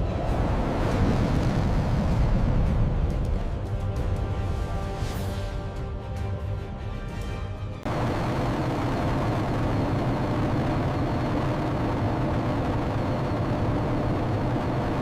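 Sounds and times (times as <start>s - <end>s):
engine rumble: 7.8s - 15.0s.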